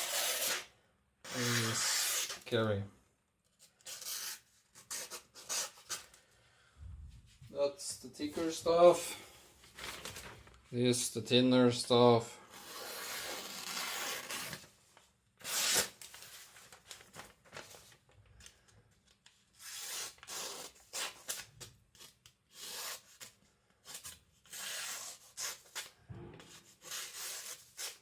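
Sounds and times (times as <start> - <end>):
knife slicing paper: 0.0 - 0.7, 1.3 - 2.4, 12.6 - 14.7, 15.4 - 16.5.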